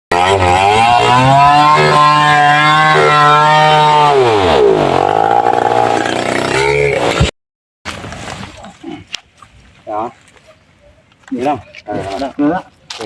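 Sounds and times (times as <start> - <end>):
chainsaw engine revving: 0.1 - 7.3.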